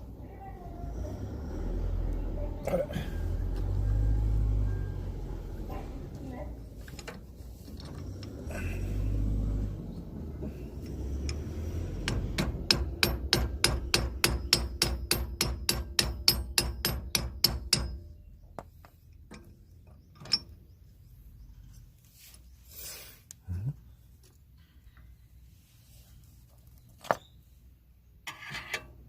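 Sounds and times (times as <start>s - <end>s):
hammer striking metal: 12.0s - 18.1s.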